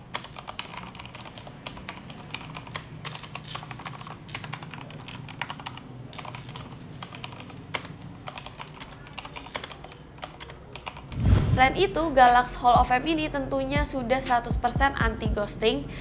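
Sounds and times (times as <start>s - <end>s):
mechanical keyboard typing: 0.0s - 11.2s.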